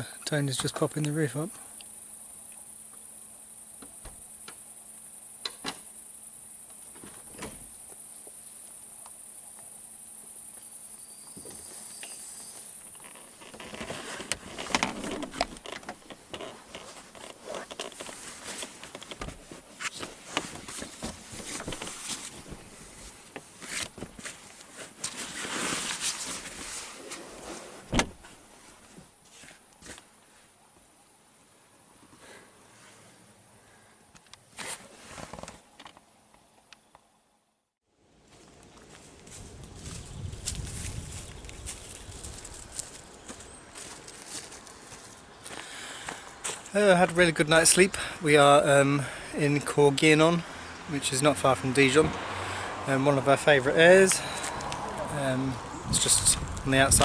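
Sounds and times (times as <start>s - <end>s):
night insects chirring: 1.3s - 16.8s, 39.3s - 46.9s
knocks and rustling handling noises: 12.8s - 30.1s.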